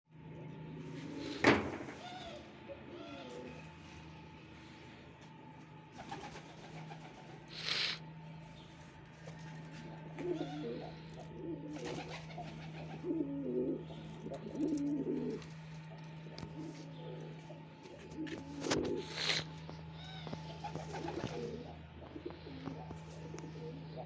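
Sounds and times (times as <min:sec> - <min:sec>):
pigeon cooing: 0:00.8 - 0:03.8, 0:06.0 - 0:08.0, 0:10.2 - 0:24.0
rustling hiss: 0:07.6 - 0:08.0.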